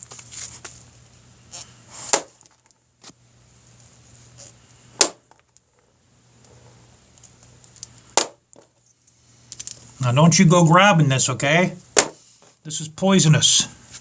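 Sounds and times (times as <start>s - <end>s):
low steady hum: 0.0s - 14.0s
small parts clicking: 9.5s - 9.8s.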